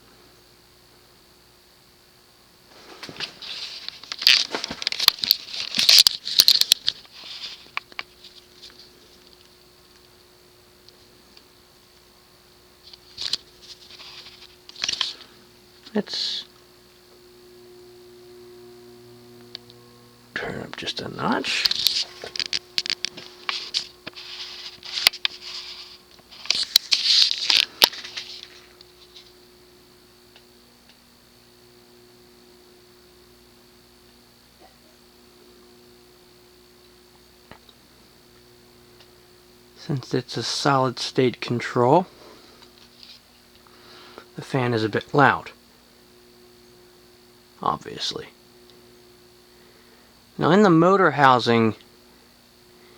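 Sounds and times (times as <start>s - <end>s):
fan motor hum: 0.0s - 52.9s
rustling and crinkling: 2.7s - 9.6s.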